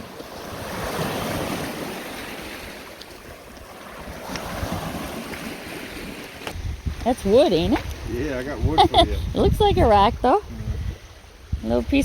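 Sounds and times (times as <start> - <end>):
waves washing onto rocky shore: 0.0 - 10.4
wind rumbling on microphone: 0.0 - 12.0.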